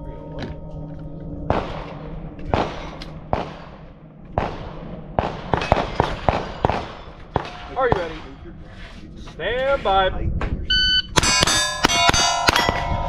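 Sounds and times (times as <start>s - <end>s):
rifle shots cracking: 1.5s - 8.4s
bullets clanging on steel: 11.2s - 13.0s.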